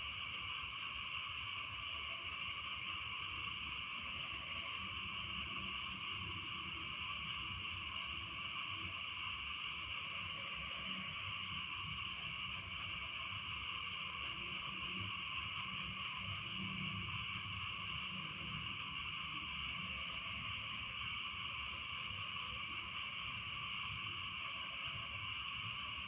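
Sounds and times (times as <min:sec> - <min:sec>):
insects calling: 0:00.1 - 0:26.0
frogs calling: 0:09.6 - 0:26.0.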